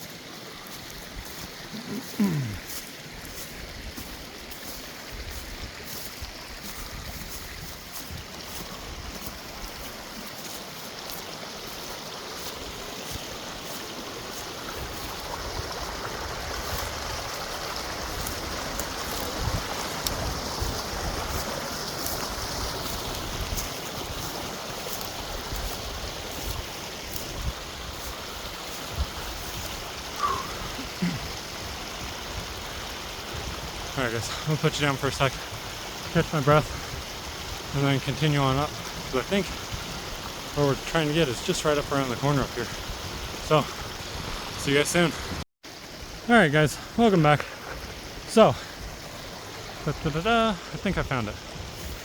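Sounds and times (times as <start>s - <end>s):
footsteps in brush: 0.0s - 30.5s
creek running: 0.0s - 52.0s.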